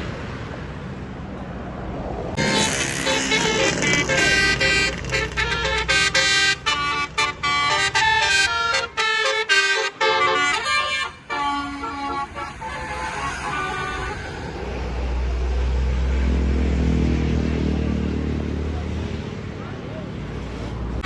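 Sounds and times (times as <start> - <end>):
engine rumble: 0.0 - 21.0
multi-tone bus horn tune: 2.4 - 14.5.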